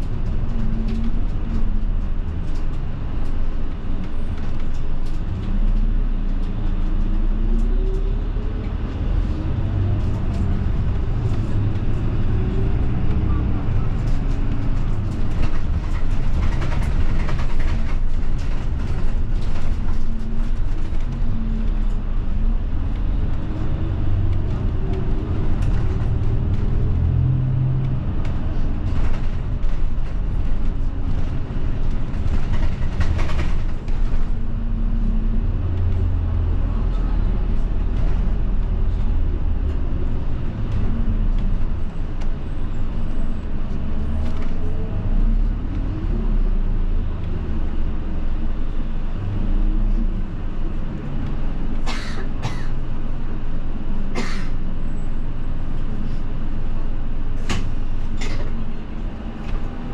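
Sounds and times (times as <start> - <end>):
bus engine and road rumble: 0.0 - 59.9.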